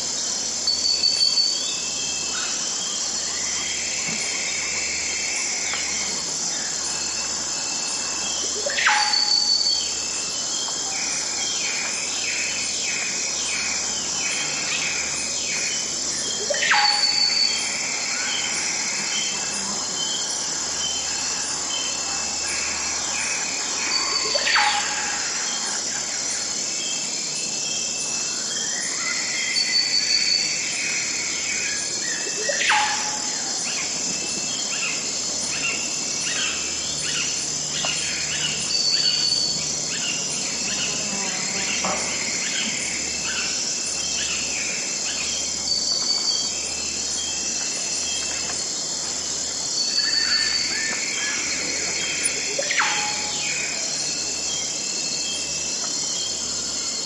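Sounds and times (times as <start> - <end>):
insects droning: 0.0 - 57.0
birds chirping and calling: 11.1 - 26.1, 49.6 - 55.5.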